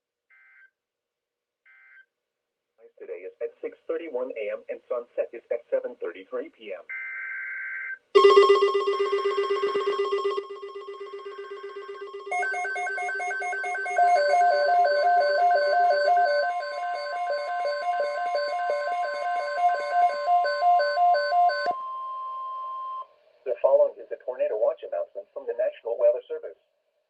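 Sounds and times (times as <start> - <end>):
pulsing electronic alarm: 7.0 - 23.1
steady high tone: 8.2 - 21.8.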